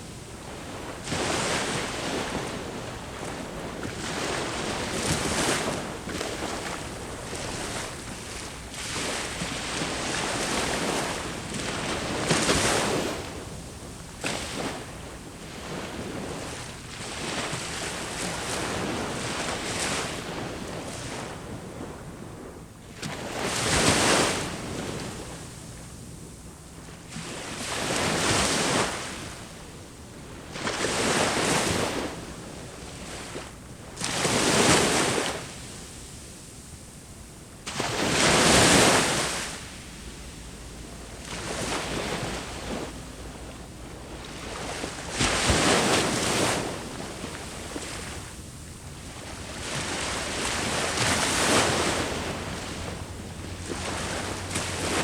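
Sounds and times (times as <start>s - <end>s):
surf washing on beach: 0.0s - 55.0s
waves crashing: 37.6s - 55.0s.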